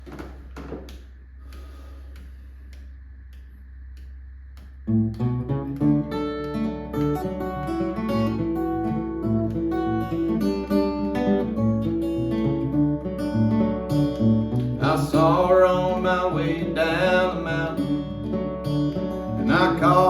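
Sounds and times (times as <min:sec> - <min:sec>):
steady low hum: 0:00.0 - 0:20.0
soft clicks: 0:00.9 - 0:07.4
acoustic guitar playing: 0:04.9 - 0:20.0.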